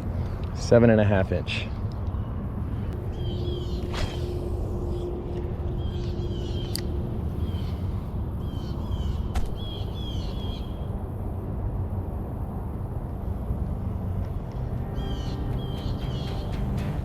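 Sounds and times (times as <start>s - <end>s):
bird calling high notes: 14.7s - 17.0s.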